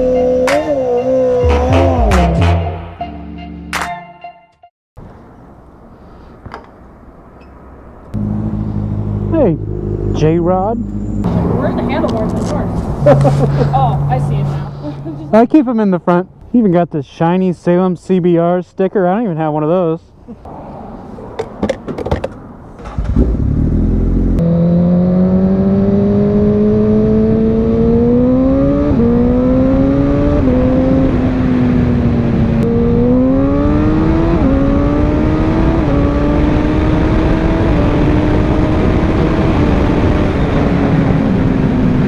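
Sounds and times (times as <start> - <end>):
motorcycle engine accelerating: 0.0 - 2.9, 8.1 - 15.4, 22.8 - 42.0.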